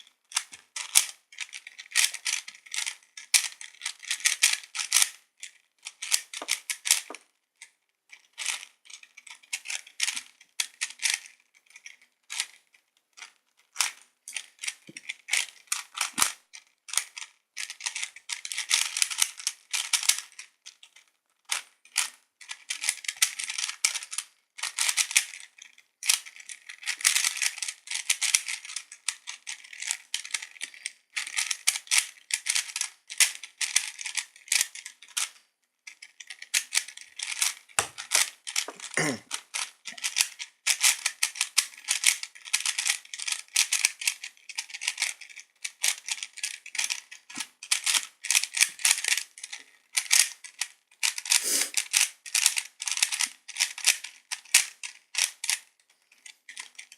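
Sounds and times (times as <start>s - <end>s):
puzzle cube clicking: 5.8s - 7.2s, 13.8s - 16.4s, 36.4s - 55.6s, 56.5s - 56.9s.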